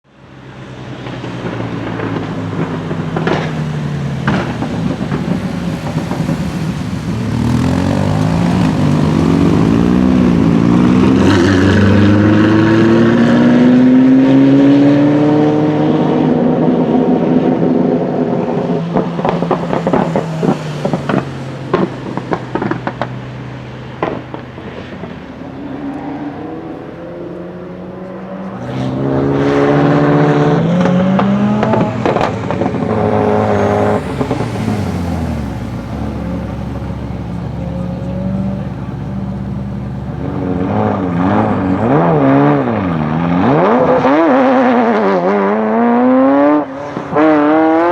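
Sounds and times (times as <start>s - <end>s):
sports car engine accelerating: 0.3s - 47.9s
exhaust pops and crackles: 0.9s - 11.4s, 18.4s - 25.7s, 30.2s - 44.4s.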